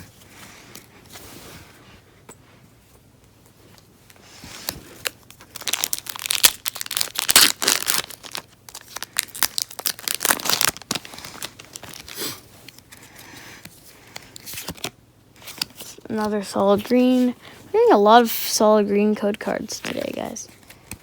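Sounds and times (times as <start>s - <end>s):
foil wrapper crinkling: 4.9s - 13.2s.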